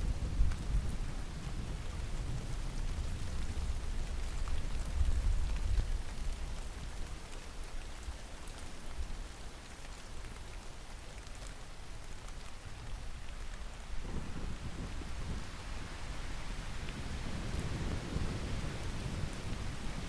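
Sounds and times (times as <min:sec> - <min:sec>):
steady rain falling: 0:00.0 - 0:20.0
distant thunder rumble: 0:14.0 - 0:16.1.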